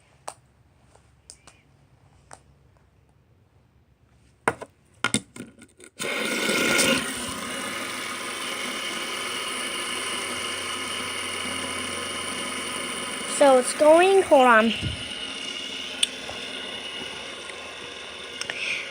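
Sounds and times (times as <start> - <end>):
fidget spinner whirring: 5.9 - 18.9
fidget spinner clicks: 17.0 - 18.9.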